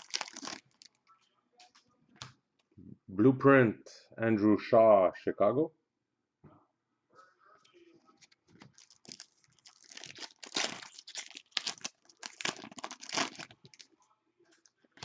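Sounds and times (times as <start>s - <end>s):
plastic packaging crinkling: 0.0s - 1.0s, 8.1s - 14.0s.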